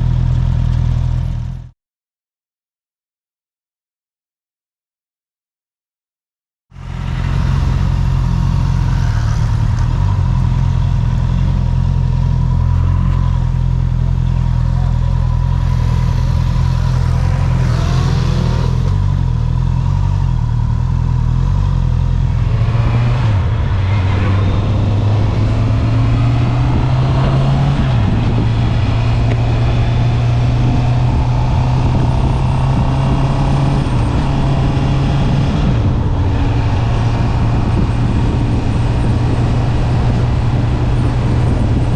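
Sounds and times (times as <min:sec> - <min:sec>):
wind and road noise: 0:00.0 - 0:01.7, 0:06.7 - 0:41.9
motorcycle engine accelerating: 0:06.8 - 0:41.9.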